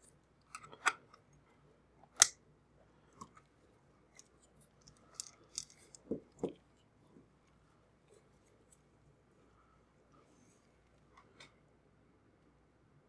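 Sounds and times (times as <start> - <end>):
clicks and taps of handling parts: 4.2 - 6.6.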